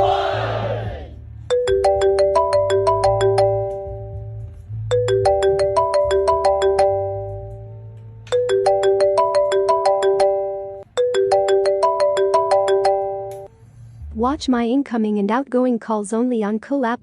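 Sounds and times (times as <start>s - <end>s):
phone ringtone plucked melody: 1.4s - 13.5s.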